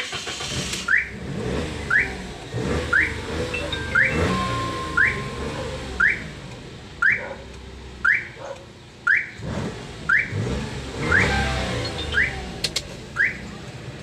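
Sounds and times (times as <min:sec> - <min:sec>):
car alarm rising chirp: 0:01.8 - 0:07.4, 0:08.0 - 0:09.4, 0:10.1 - 0:10.4, 0:11.0 - 0:13.5.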